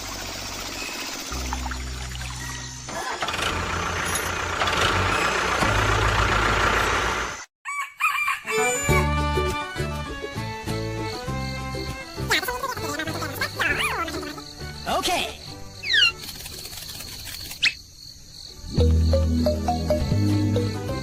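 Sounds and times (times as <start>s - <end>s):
background music: 8.5s - 16.4s, 18.6s - 21.0s.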